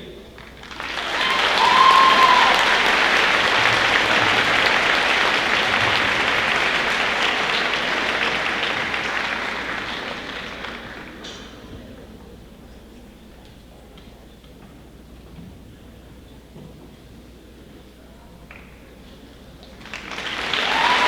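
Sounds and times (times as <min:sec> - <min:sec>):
audience applauding: 0:00.4 - 0:11.7, 0:19.6 - 0:21.0.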